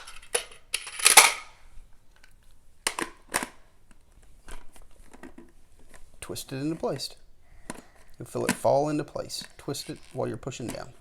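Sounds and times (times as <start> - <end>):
toy pieces clicking and knocking: 0.0 - 1.4.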